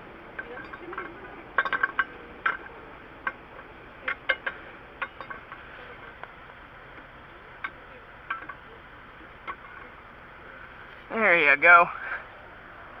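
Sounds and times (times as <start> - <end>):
steady background hiss: 0.0 - 13.0
metal tools clinking: 0.4 - 3.4.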